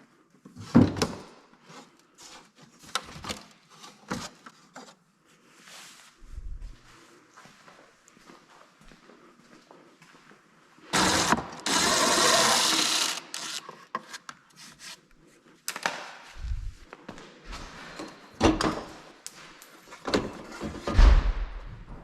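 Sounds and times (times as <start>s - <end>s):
power tool running: 10.9s - 13.6s.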